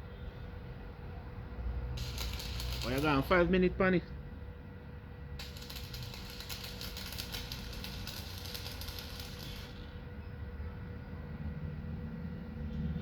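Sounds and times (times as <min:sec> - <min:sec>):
arc welding crackle: 0:02.0 - 0:03.6, 0:05.4 - 0:10.1.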